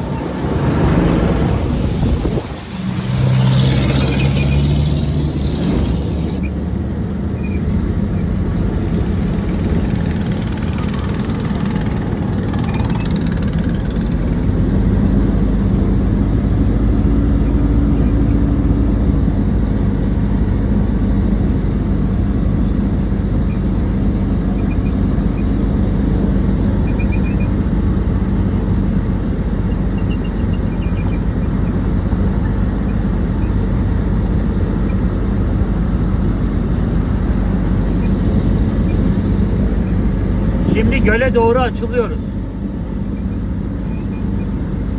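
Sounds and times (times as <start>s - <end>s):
boat engine droning: 0.0s - 44.9s.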